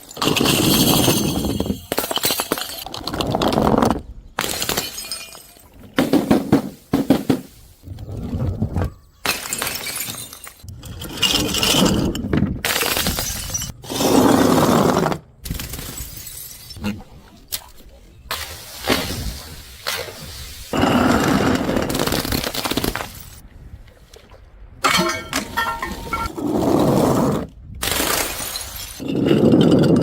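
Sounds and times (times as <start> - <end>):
glass bottles smashing: 0.0 - 3.0, 4.4 - 6.5, 9.2 - 13.8, 15.5 - 16.8, 24.8 - 26.3, 27.9 - 30.0
glass shards clinking: 4.5 - 5.7, 9.3 - 12.0, 12.7 - 13.8, 24.8 - 26.3.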